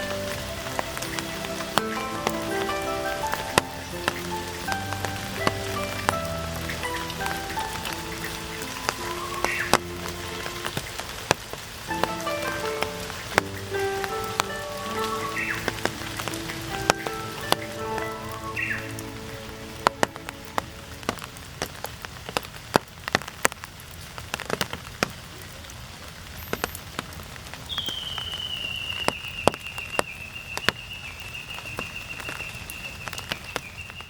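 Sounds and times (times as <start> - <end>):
steady rain: 0.0 - 34.0
water drips: 0.0 - 34.0
high whistle-like tone: 27.7 - 30.0.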